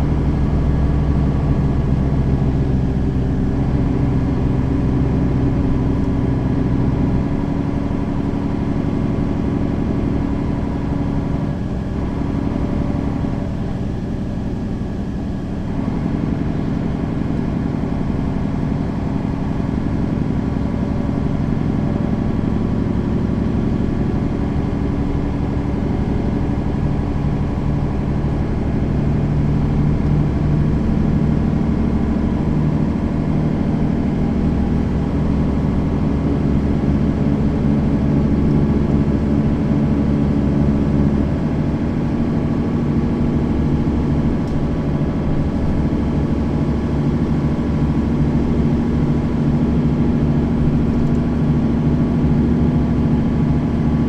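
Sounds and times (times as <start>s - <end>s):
city bus engine running: 0.0s - 54.0s.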